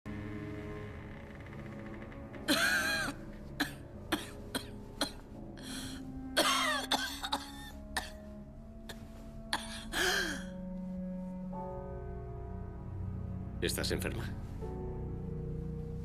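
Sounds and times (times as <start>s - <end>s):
soft background music: 0.1s - 16.0s
woman coughing: 2.5s - 5.2s, 6.4s - 8.2s.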